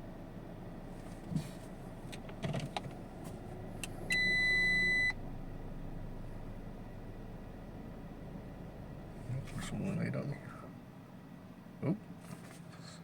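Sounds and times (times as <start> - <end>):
electronic warning beep: 4.1 - 5.2.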